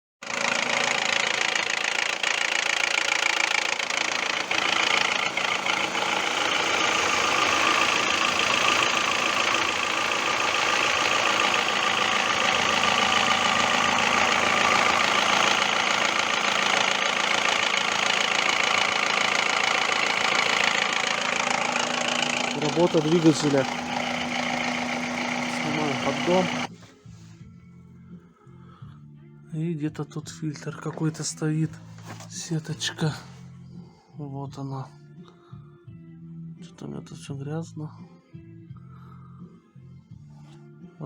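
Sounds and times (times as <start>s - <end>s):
car engine knocking: 0.2s - 26.7s.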